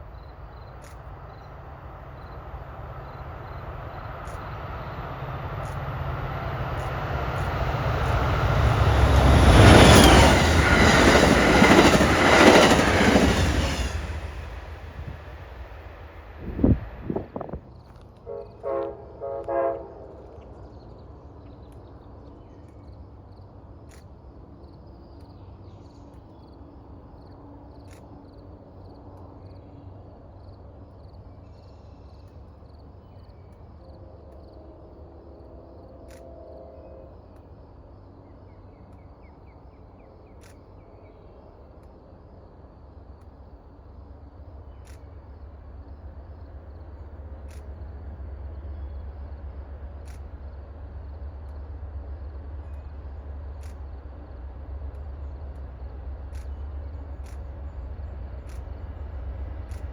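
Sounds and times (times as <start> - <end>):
insect chirping: 0.0 - 16.8, 20.5 - 59.9
faint sharp clicks: 36.1 - 36.3, 44.8 - 45.2, 47.4 - 47.8, 50.0 - 50.4, 53.5 - 54.0, 54.9 - 57.6, 58.2 - 58.8, 59.6 - 59.9.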